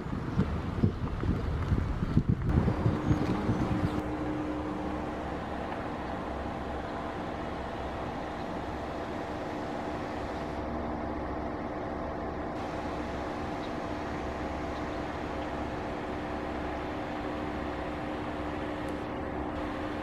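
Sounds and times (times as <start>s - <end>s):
wind buffeting microphone: 0.0s - 10.8s
car engine and road noise: 0.0s - 20.0s.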